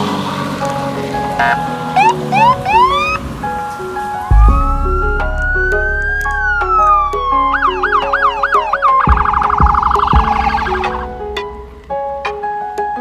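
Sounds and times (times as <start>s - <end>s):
background piano music: 0.0s - 13.0s
electronic siren wailing and yelping: 1.4s - 3.2s, 4.3s - 11.0s.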